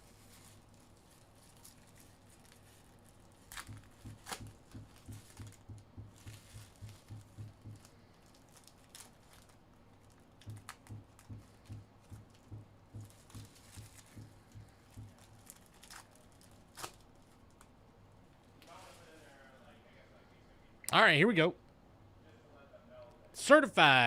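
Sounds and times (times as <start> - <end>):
wrapper rustling and tearing: 0.0 - 17.7
soft low thumping: 3.7 - 7.9, 10.5 - 15.2.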